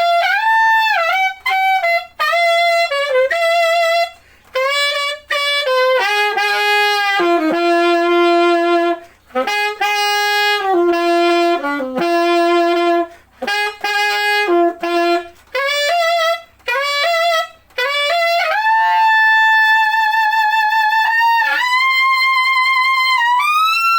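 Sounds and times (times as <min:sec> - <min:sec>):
alto saxophone solo: 0:00.0 - 0:23.9
quick breaths: 0:04.2 - 0:04.6, 0:09.0 - 0:09.3.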